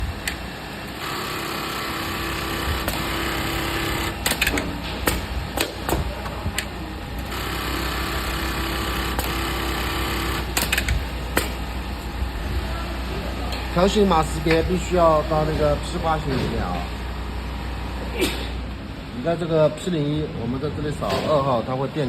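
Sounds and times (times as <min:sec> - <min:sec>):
sewing machine stitching: 0:01.0 - 0:04.7
machine clicks and knocks: 0:02.4 - 0:06.7, 0:09.2 - 0:11.7.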